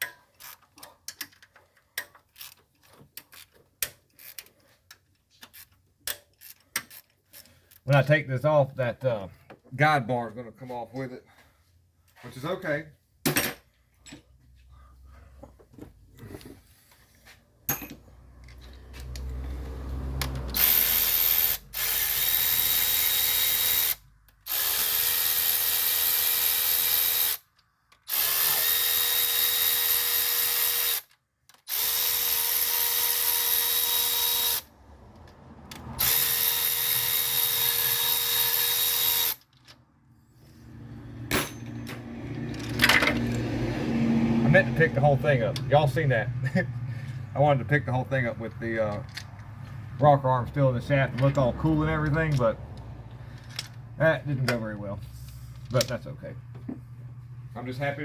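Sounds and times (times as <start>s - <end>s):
cordless power tool spinning: 20.2s - 27.5s, 28.1s - 31.1s, 31.7s - 34.8s, 35.7s - 39.5s.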